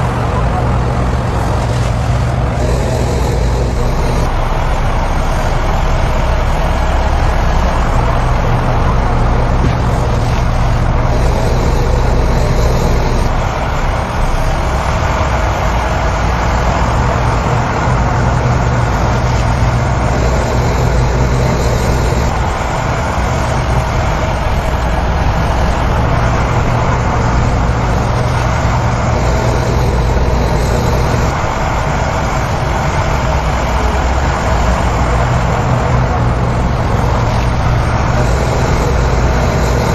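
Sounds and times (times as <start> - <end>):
heavy diesel machinery drone: 0.0 - 39.9.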